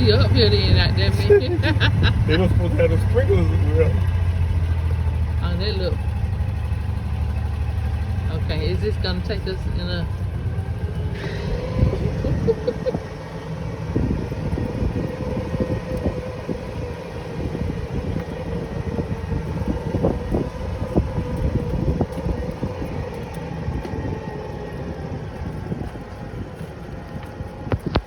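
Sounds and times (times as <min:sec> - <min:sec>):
wind on microphone: 0:00.0 - 0:06.5, 0:08.2 - 0:28.0
vehicle running rumble: 0:00.0 - 0:28.0.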